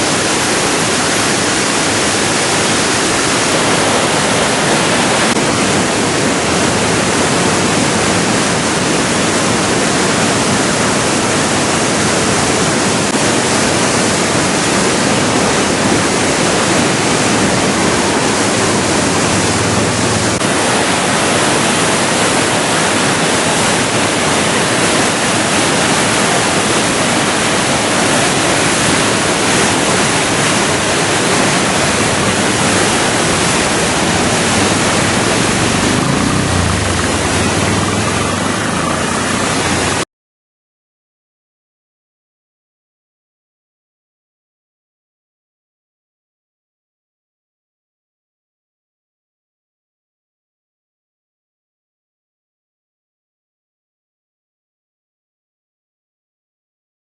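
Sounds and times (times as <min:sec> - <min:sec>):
river water rushing: 0:00.0 - 0:40.0.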